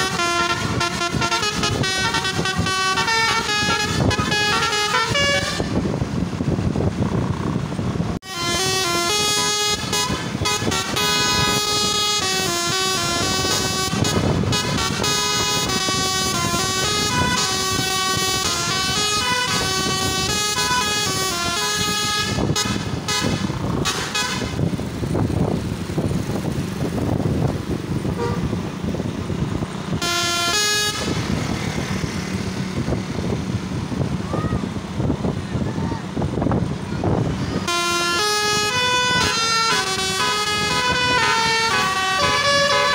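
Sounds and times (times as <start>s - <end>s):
short horn blasts: 0.0s - 5.8s, 8.2s - 24.6s, 28.1s - 28.6s, 30.0s - 31.3s, 37.5s - 42.9s
multi-tone bus horn tune: 0.0s - 5.9s, 8.2s - 24.8s, 28.1s - 28.6s, 29.9s - 31.9s, 37.1s - 42.9s.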